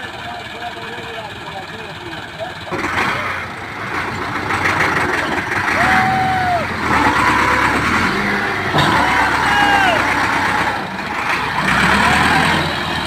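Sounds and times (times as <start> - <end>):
tractor diesel engine labouring: 0.0 - 13.0
people shouting: 5.7 - 7.9, 8.7 - 12.6.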